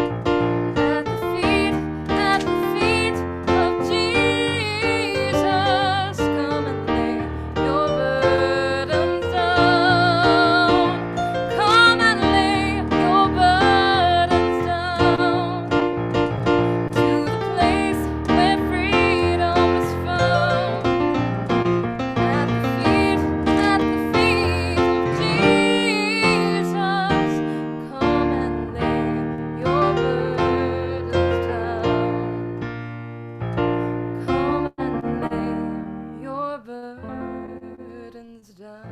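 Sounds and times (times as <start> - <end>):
piano accompaniment: 0.0 - 38.9
person singing with vibrato: 0.8 - 15.8, 16.8 - 21.0, 22.2 - 32.6.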